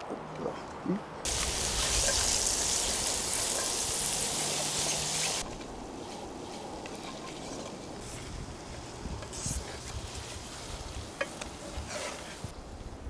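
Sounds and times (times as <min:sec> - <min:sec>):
food sizzling in a pan: 0:01.3 - 0:05.4.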